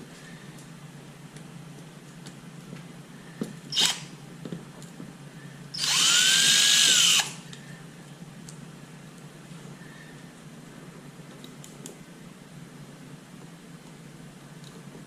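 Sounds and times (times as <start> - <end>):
electric drill whining: 3.7 - 4.1, 5.8 - 7.4.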